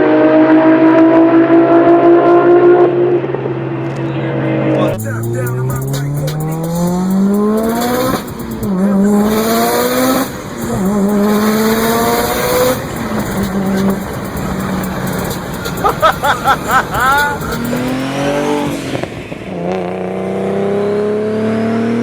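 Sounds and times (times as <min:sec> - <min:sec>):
car engine accelerating: 0:04.8 - 0:22.0.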